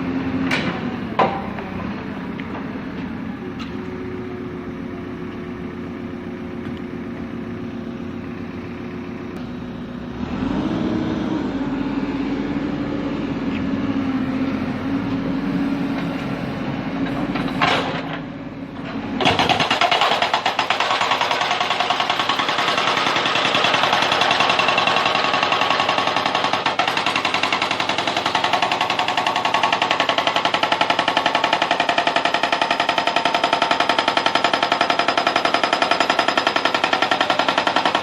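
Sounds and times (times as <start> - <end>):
diesel engine running: 0.0 - 38.0
hydraulic breaker pounding rock: 17.0 - 38.0.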